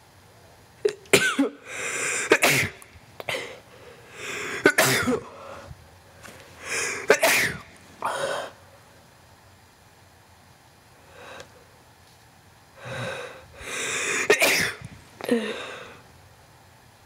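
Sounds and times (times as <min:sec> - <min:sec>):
man sneezing: 0:01.2 - 0:03.6, 0:04.2 - 0:05.4, 0:06.7 - 0:08.6, 0:13.8 - 0:15.8.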